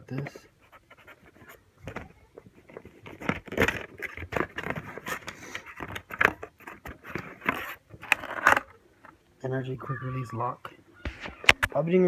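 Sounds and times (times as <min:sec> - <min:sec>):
packaging crinkling and rustling: 0:01.9 - 0:08.8.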